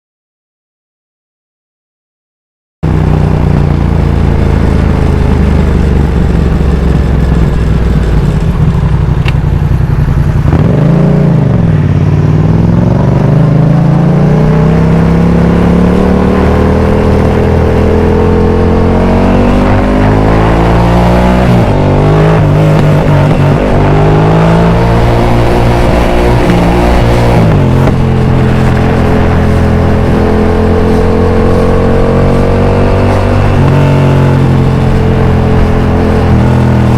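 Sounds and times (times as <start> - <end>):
motorcycle engine revving: 2.8 - 36.9
gear change: 15.4 - 36.9.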